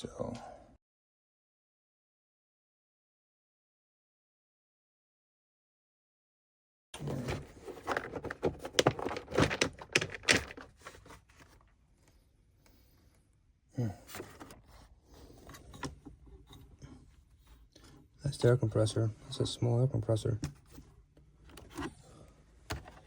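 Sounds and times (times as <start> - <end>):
plastic casing clicks and rattles: 7.8 - 10.7.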